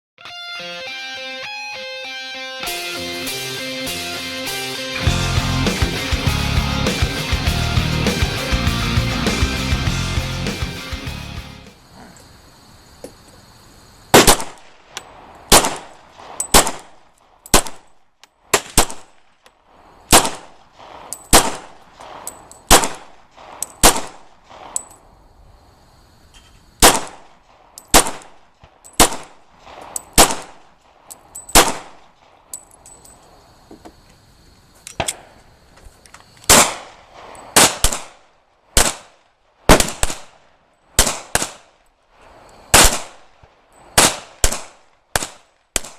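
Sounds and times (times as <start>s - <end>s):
pistol shots: 14.2s - 14.6s, 15.5s - 17.9s, 18.6s - 19.2s, 20.1s - 20.6s, 21.3s - 24.8s, 26.8s - 27.3s, 27.9s - 28.4s, 29.0s - 29.4s, 30.1s - 30.6s, 31.5s - 32.1s, 36.5s - 37.0s, 37.6s - 38.2s, 38.8s - 40.4s, 41.0s - 41.7s, 42.8s - 43.2s, 44.0s - 45.9s.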